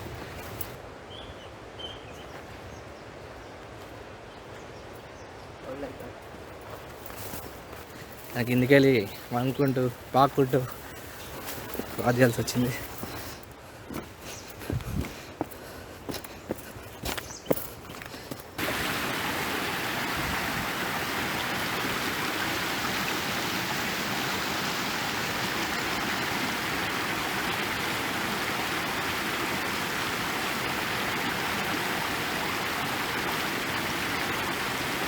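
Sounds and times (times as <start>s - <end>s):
rocky mountain stream rushing: 7.4s - 14.1s, 16.5s - 35.0s
footstep clicks: 10.6s - 18.6s.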